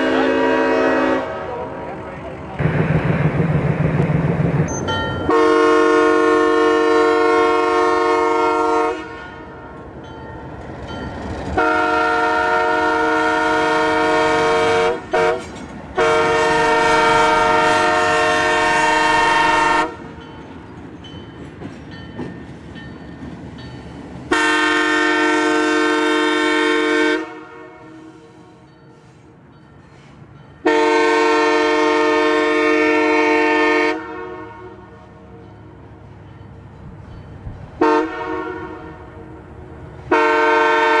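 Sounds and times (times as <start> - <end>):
locomotive air horn blasts: 0.0 - 2.0, 5.3 - 9.7, 11.6 - 20.1, 24.3 - 29.2, 30.6 - 35.2, 37.8 - 39.4, 40.1 - 41.0.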